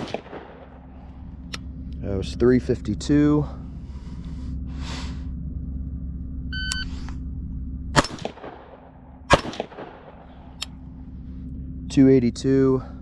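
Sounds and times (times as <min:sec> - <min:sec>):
rifle shots ringing: 0:00.0 - 0:00.9, 0:07.9 - 0:10.6
shot timer beep: 0:06.5 - 0:06.9.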